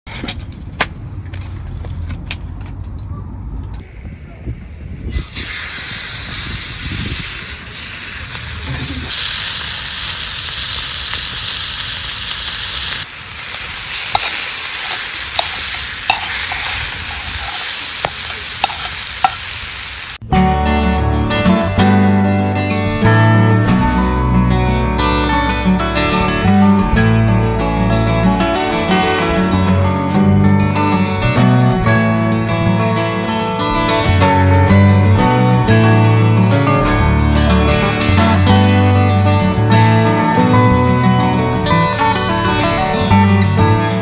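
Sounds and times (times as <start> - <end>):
steak sizzling over fire: 5.1 - 20.2
acoustic guitar music: 20.2 - 44.0.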